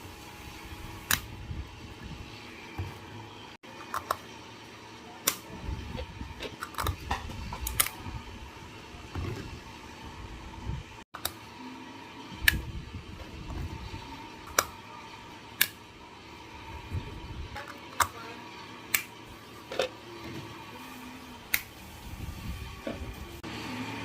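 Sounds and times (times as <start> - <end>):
low rumbling handling noise: 5.5 - 11.0.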